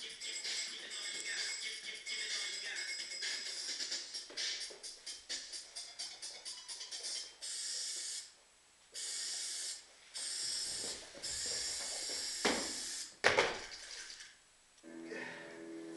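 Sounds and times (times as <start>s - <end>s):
spray hiss: 9.0s - 13.1s.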